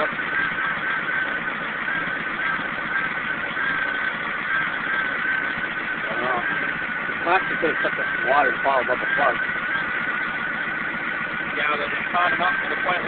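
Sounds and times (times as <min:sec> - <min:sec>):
car engine idling unevenly: 0:00.0 - 0:13.0
steady high whine: 0:00.0 - 0:13.0.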